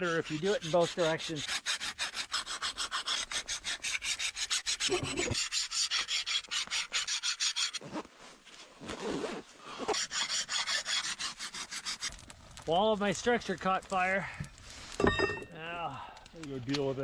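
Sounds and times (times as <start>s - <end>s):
hand file rasping on steel blade: 0.0s - 7.8s, 9.8s - 12.3s.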